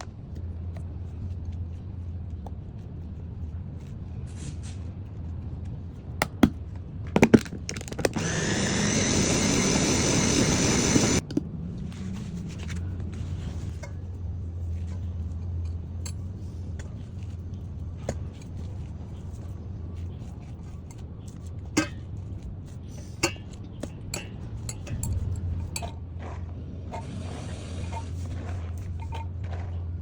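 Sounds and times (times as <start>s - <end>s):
electric grinder whining: 8.1s - 11.2s.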